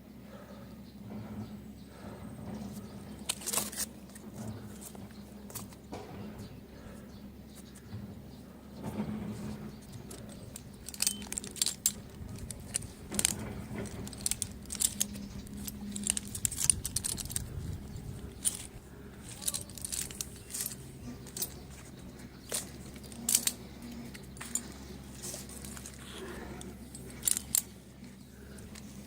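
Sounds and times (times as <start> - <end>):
faint low hum: 0.0 - 29.0
metal gear clinking: 3.2 - 3.9, 9.8 - 29.0.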